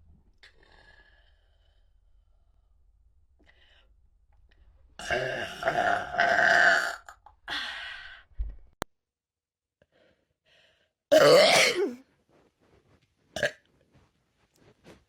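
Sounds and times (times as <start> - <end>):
person burping loudly: 5.0 - 7.3, 11.1 - 11.9.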